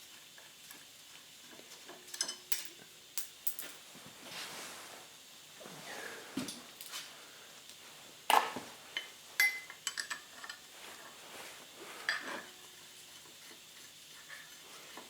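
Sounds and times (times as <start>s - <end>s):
metal tools clinking: 9.4s - 10.6s.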